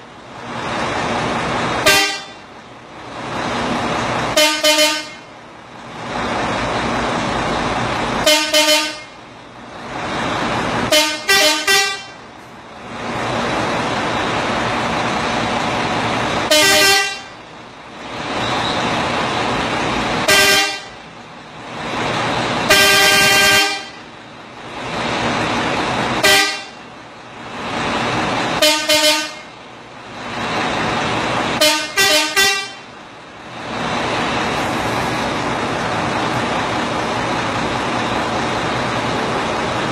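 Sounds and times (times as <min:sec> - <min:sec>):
loud steady rushing noise: 0:00.0 - 0:39.9
truck air horn blasts: 0:01.8 - 0:02.4, 0:04.3 - 0:05.3, 0:08.2 - 0:09.2, 0:10.9 - 0:12.2, 0:16.5 - 0:17.4, 0:20.3 - 0:21.0, 0:22.7 - 0:24.1, 0:26.2 - 0:26.8, 0:28.6 - 0:29.5, 0:31.6 - 0:32.9.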